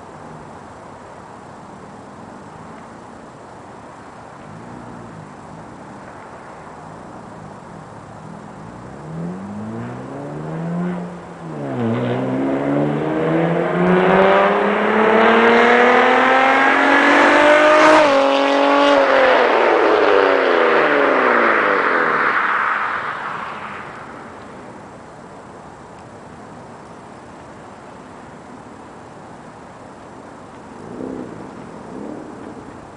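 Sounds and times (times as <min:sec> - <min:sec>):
car engine accelerating hard: 0:04.4 - 0:24.8.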